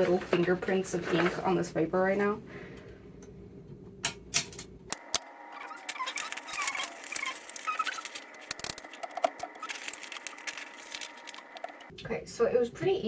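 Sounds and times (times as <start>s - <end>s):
typewriter parts clicking and rattling: 4.4s - 11.9s
short squeaks: 5.5s - 9.8s.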